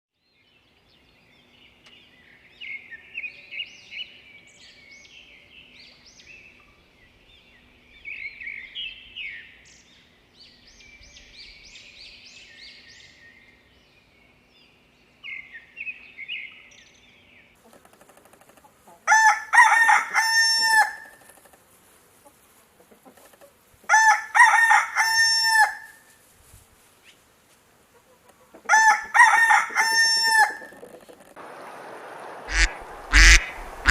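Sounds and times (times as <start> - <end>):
rooster crowing: 19.0 - 21.2, 23.9 - 26.0, 28.7 - 33.9
small songbird chirping: 31.4 - 33.9.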